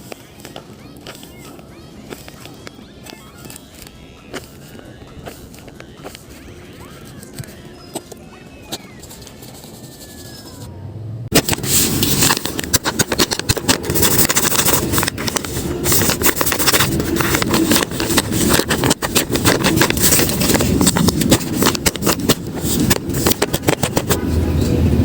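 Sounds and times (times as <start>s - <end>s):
paper crinkling: 0.0s - 10.6s, 11.3s - 24.4s.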